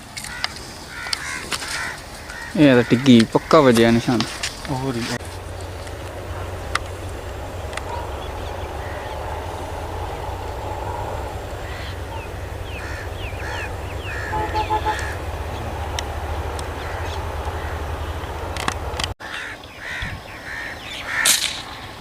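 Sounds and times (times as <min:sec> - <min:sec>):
birds calling: 0:00.0 - 0:22.0
steady low rumble: 0:04.4 - 0:19.2.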